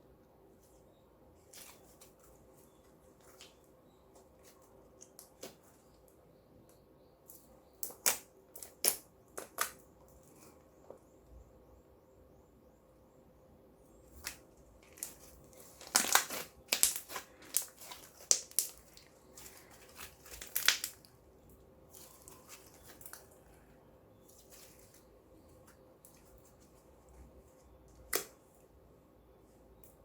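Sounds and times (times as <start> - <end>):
slime squeezed by hand crackling: 15.0 - 21.1.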